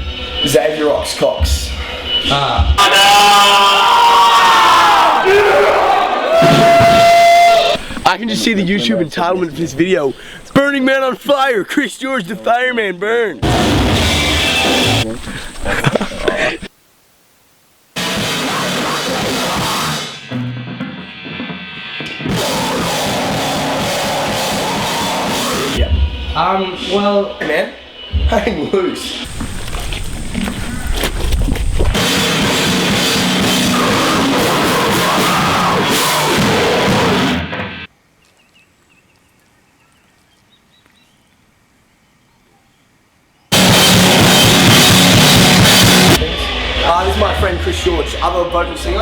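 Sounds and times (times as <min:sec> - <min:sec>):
loud rock music: 0:13.4 - 0:15.4, 0:18.0 - 0:28.6, 0:31.9 - 0:37.9, 0:43.5 - 0:49.0.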